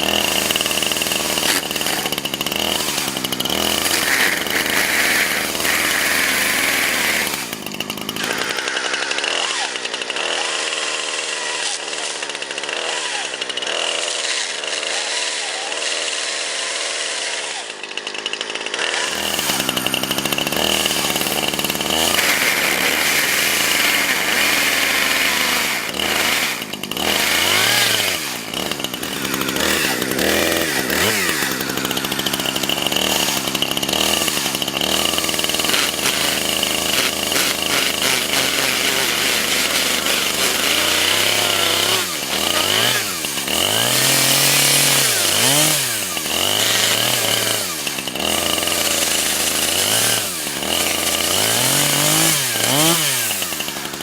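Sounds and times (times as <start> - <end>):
chainsaw cutting into phone: 0.0 - 54.0
chainsaw engine revving: 0.0 - 54.0.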